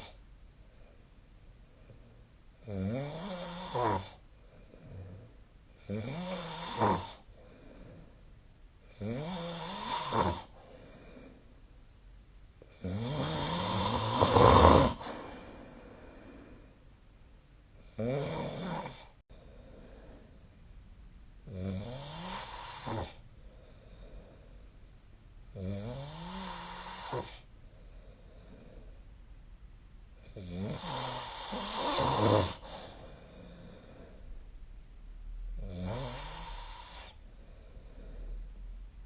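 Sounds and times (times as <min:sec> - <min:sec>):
person snoring: 0:02.6 - 0:04.2, 0:04.8 - 0:08.1, 0:08.8 - 0:11.4, 0:12.6 - 0:16.7, 0:17.8 - 0:20.2, 0:21.5 - 0:23.2, 0:25.5 - 0:27.5, 0:30.2 - 0:34.2, 0:35.6 - 0:38.5.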